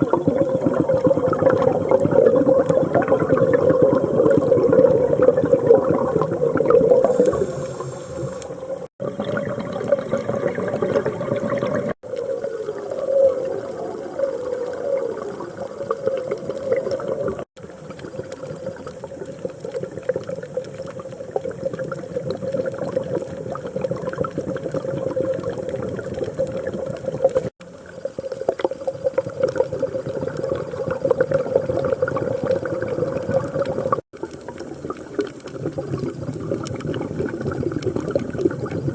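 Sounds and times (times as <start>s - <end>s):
gurgling exhaled bubbles: 0.0s - 38.9s
diver breathing through regulator: 6.8s - 8.9s.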